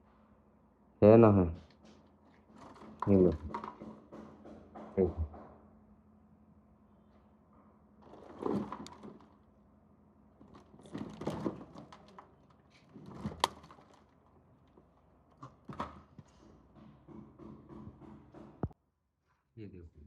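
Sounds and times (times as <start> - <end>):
wooden parts knocking and scraping: 1.6 - 5.6, 8.0 - 9.4, 10.4 - 18.8.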